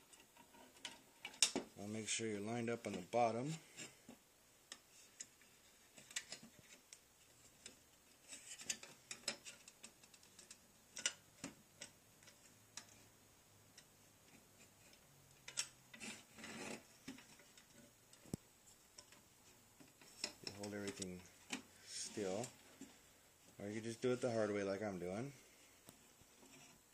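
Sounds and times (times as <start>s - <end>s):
rubbing: 15.9s - 17.9s.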